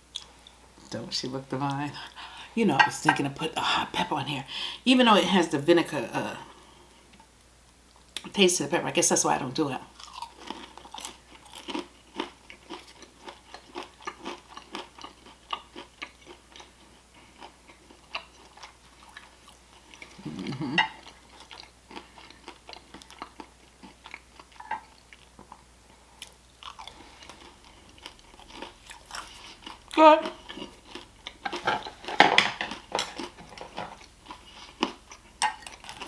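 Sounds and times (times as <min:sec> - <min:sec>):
chewing and crunching food: 0:09.8 - 0:36.0
mouth sounds: 0:20.1 - 0:21.0.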